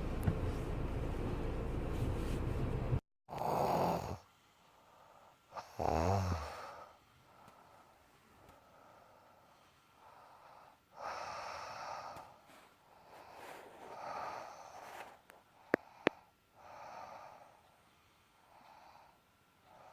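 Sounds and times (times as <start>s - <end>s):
person snoring: 3.3s - 4.3s, 5.6s - 7.0s.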